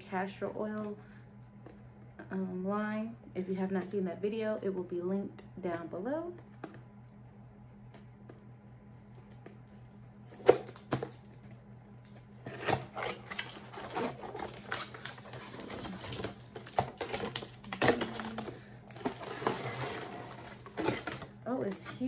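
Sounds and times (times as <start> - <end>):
low electrical hum: 0.0 - 22.0
cardboard and plastic crinkling: 12.5 - 22.0.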